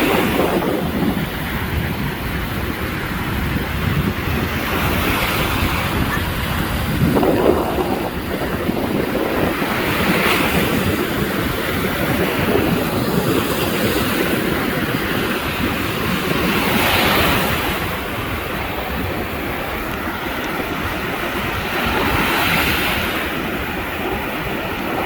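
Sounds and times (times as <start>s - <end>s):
storm surf breaking on shore: 0.0s - 25.0s
wind on microphone rumble: 0.0s - 25.0s.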